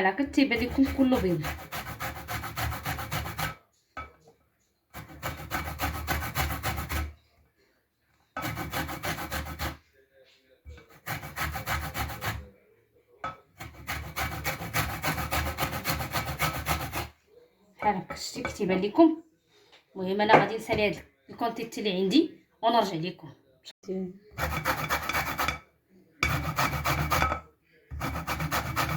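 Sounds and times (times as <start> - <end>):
lemon rasping on metal grater: 0.6 - 3.6, 5.0 - 7.1, 8.4 - 9.8, 10.8 - 12.4, 13.6 - 17.1, 24.4 - 25.6, 26.2 - 27.3, 27.9 - 28.9.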